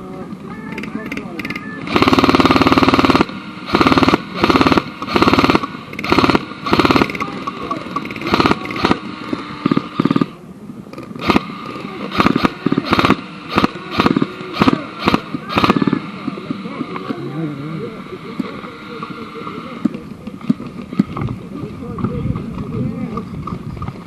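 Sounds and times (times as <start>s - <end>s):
airsoft guns firing: 1.8s - 10.4s, 11.2s - 16.7s.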